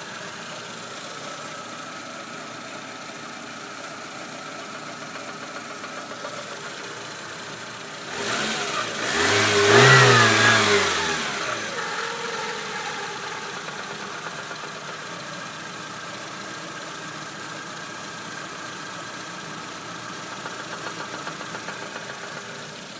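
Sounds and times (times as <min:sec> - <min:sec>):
engine revving: 0:08.0 - 0:14.3
car engine idling with a knock: 0:12.0 - 0:16.1, 0:19.6 - 0:22.9.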